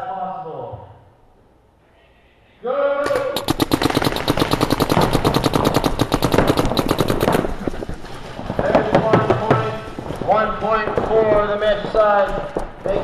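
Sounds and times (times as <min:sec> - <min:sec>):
paintball markers firing rapidly: 0:03.0 - 0:09.8.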